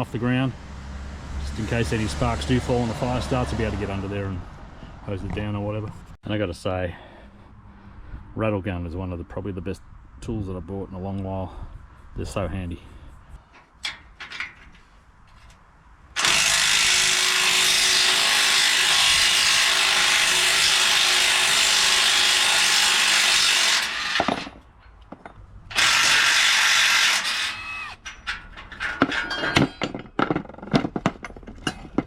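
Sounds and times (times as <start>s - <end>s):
power tool on steel: 16.2s - 24.6s, 25.7s - 28.2s
metallic clinks and knocks: 28.0s - 32.0s.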